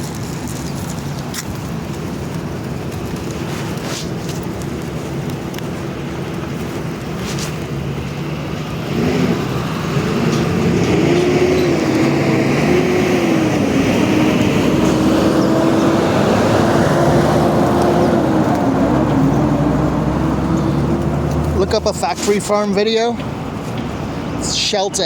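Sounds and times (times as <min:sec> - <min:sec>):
vehicle engine humming: 0:00.0 - 0:25.0.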